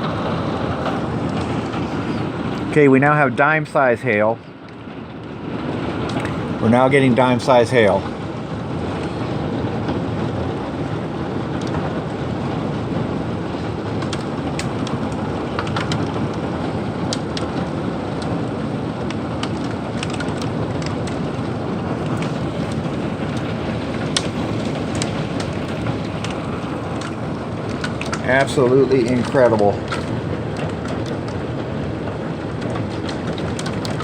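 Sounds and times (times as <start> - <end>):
heavy rain: 0.0 - 34.0
hailstones ticking: 4.7 - 8.2, 11.4 - 34.0.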